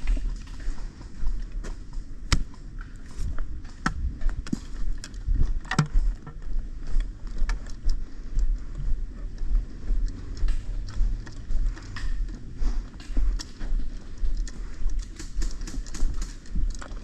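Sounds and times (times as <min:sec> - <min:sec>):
footsteps in woodland: 0:00.0 - 0:17.0
gear rustling: 0:00.0 - 0:17.0
low wind rumble on microphone: 0:00.0 - 0:17.0
sharp clicks and cracks: 0:03.6 - 0:06.4, 0:10.0 - 0:17.0.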